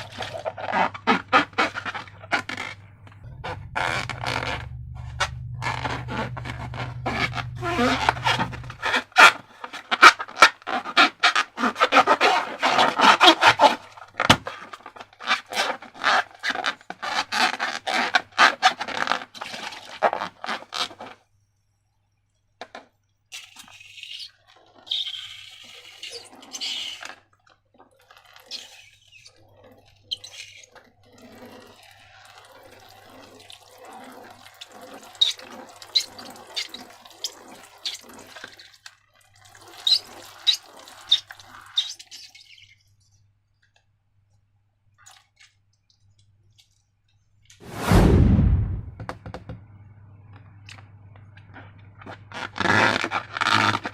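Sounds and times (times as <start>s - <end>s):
slime squelching: 0.0s - 14.4s.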